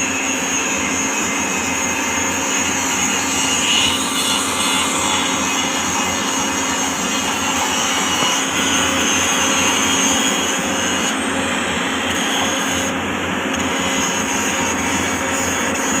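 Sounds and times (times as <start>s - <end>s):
power grinder grinding steel: 0.0s - 16.0s.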